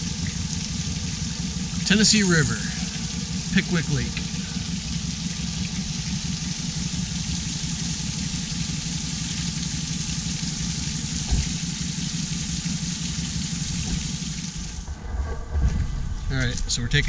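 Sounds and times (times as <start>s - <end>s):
boat engine running: 0.0s - 17.0s
short thump: 11.2s - 11.6s.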